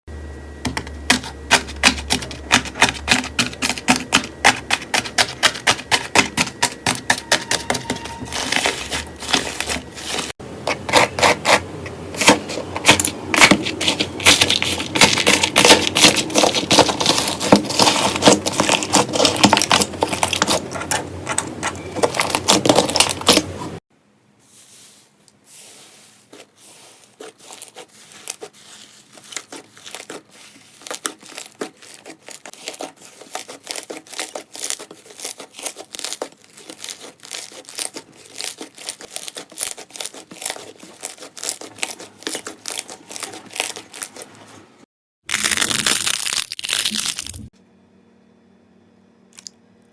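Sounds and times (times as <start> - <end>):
slime clicking and crackling: 12.2 - 23.6, 29.2 - 44.3, 45.3 - 47.5.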